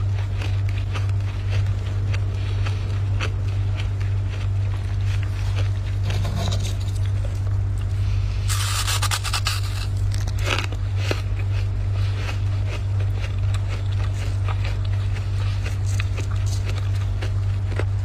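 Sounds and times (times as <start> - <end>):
steady low hum: 0.0 - 18.0
frost being scraped: 4.4 - 7.3, 8.0 - 17.0.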